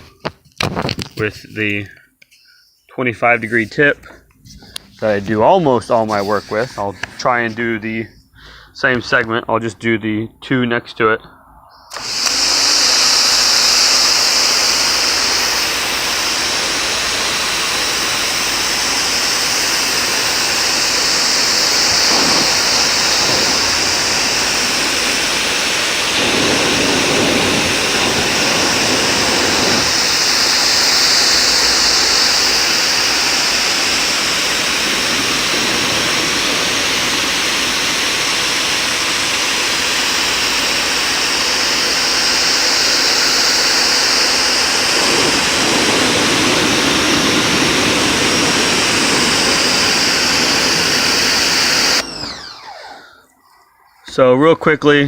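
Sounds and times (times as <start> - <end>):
pressure washer water jet: 11.9 - 53.3.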